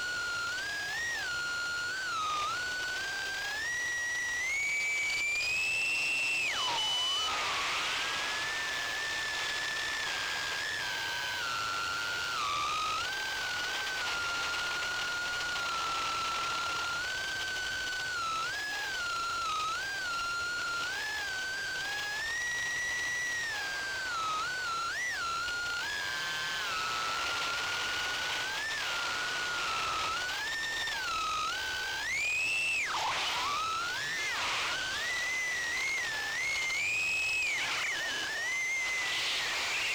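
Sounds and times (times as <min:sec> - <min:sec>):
drone motors whining: 0:22.6 - 0:39.9.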